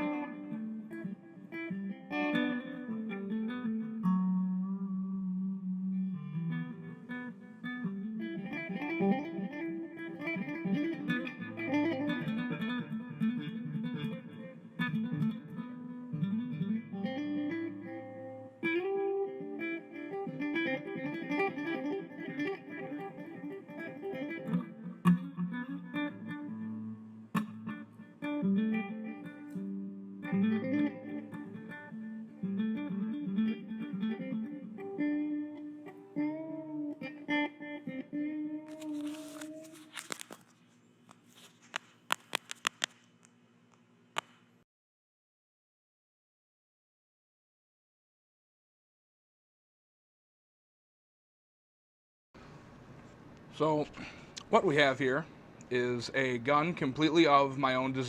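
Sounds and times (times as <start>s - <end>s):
plucked electric guitar: 0.0s - 40.4s
sharp clicks: 41.7s - 44.5s.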